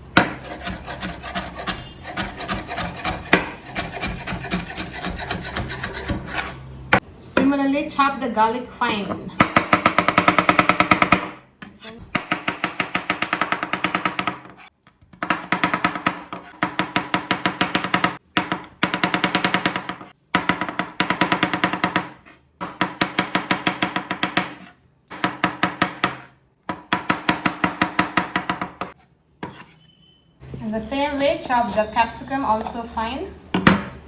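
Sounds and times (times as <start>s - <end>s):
knife chopping on a board: 0.2s - 7.0s, 9.4s - 29.6s.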